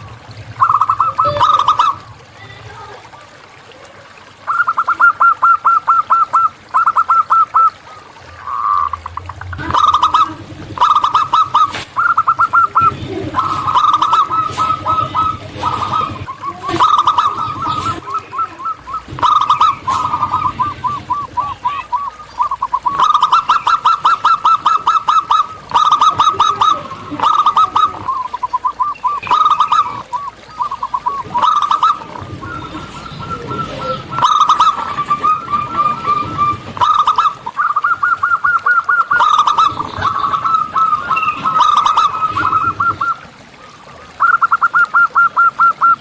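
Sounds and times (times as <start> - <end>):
doves cooing rapidly: 0.0 - 46.0.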